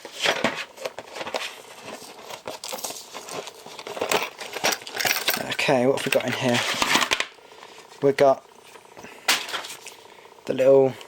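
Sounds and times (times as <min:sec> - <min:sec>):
packaging crinkling and rustling: 0:00.0 - 0:07.3.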